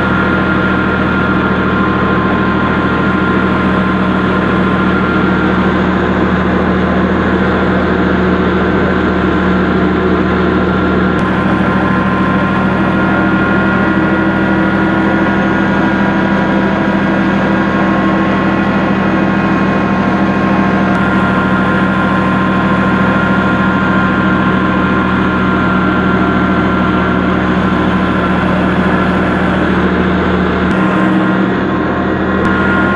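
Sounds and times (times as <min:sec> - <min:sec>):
grinding mill humming and whining: 0:00.0 - 0:32.9.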